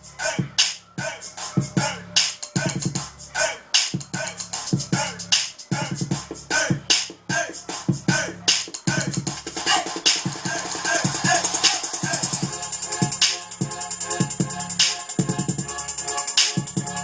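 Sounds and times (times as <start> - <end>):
hip-hop drum beat: 0.0 - 17.0
pulsing bass line: 0.0 - 17.0
record scratch sounds: 7.4 - 12.4.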